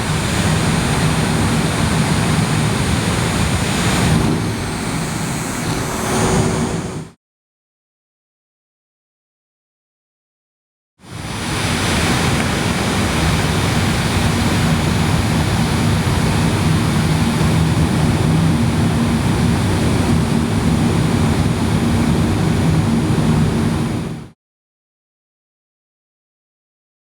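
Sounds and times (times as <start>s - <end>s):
air conditioner fan whooshing: 0.0s - 7.1s, 11.2s - 24.4s.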